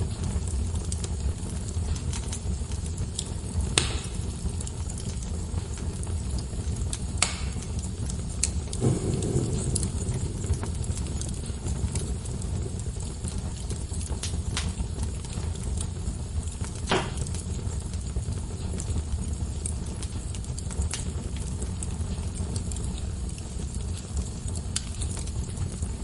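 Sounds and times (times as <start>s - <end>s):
wood fire crackling: 0.0s - 26.0s
fire pop: 0.1s - 26.0s.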